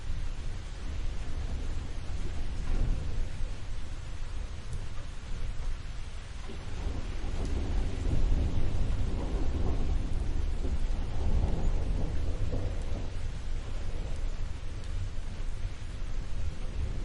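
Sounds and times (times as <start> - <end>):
rain hissing: 0.0 - 17.0
thunder rumbling: 0.0 - 17.0.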